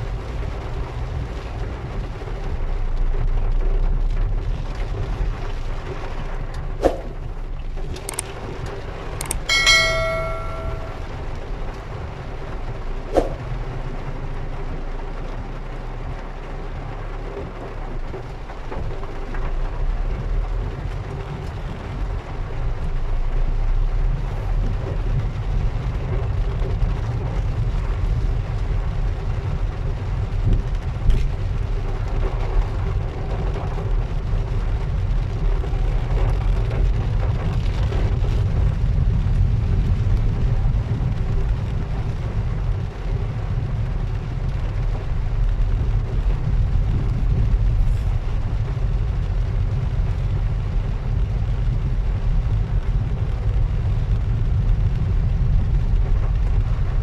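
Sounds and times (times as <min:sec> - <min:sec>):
heavy rain pouring: 0:00.0 - 0:09.5, 0:10.6 - 0:57.0
low rumble: 0:00.0 - 0:57.0.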